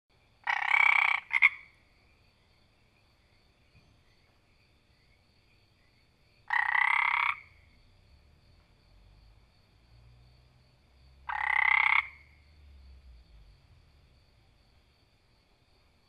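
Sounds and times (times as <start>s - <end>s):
frog croaking: 0.4s - 1.9s, 5.8s - 8.0s, 11.2s - 13.0s.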